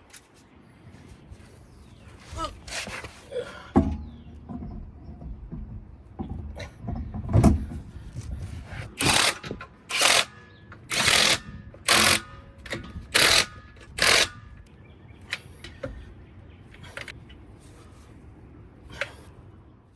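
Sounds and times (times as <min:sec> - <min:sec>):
impact wrench bursts: 0:09.0 - 0:14.6.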